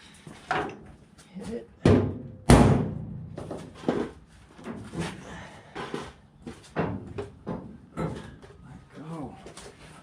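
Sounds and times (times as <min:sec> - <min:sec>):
knocks on car sheet metal: 0:01.8 - 0:03.4.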